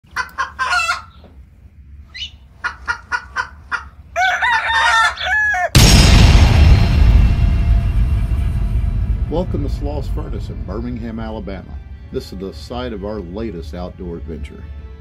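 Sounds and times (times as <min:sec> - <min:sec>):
bird clucking: 0:00.1 - 0:01.3, 0:02.1 - 0:04.0
rooster-like crowing call: 0:04.2 - 0:05.8
loud deep rumble: 0:05.8 - 0:13.0.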